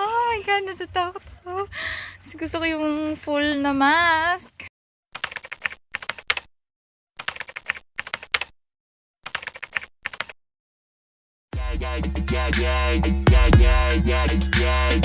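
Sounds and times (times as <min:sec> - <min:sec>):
music: 0:11.5 - 0:15.0.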